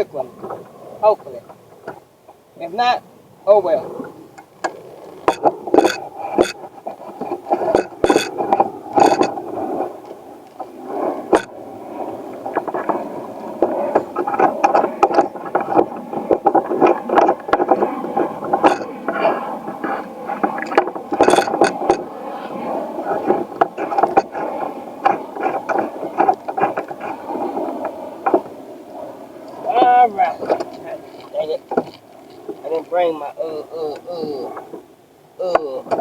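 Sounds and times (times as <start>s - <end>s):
fishing gear clicks and knocks: 4.6s - 9.4s, 18.6s - 18.9s, 20.4s - 22.0s.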